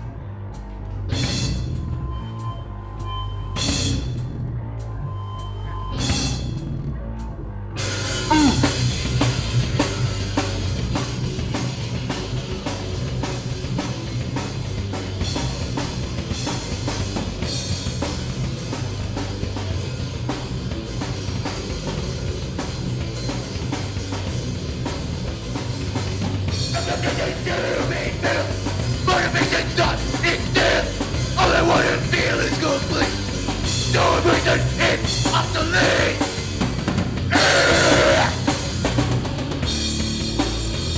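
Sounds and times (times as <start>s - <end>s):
loud hardcore band playing: 1.1s - 2.5s, 3.6s - 4.3s, 7.8s - 40.9s
shouted vocals: 8.2s - 8.8s, 26.7s - 36.6s, 37.3s - 38.8s.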